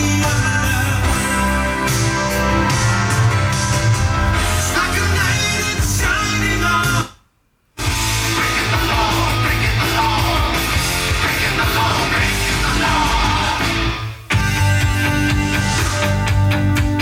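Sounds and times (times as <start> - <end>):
rock music: 0.0 - 7.1, 7.8 - 17.0.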